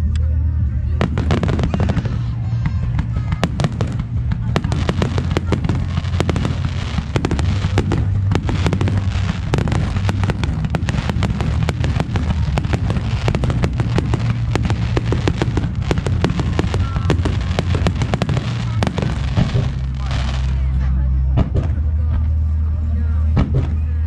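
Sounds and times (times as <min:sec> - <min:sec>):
low rumble: 0:00.0 - 0:24.0
fireworks bangs and crackles: 0:00.9 - 0:20.8, 0:21.4 - 0:22.3, 0:23.3 - 0:23.9.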